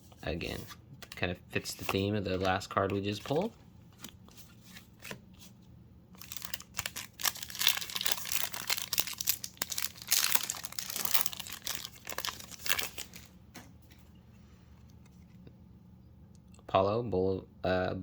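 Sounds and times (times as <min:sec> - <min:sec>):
foil wrapper crinkling: 0:06.2 - 0:13.4.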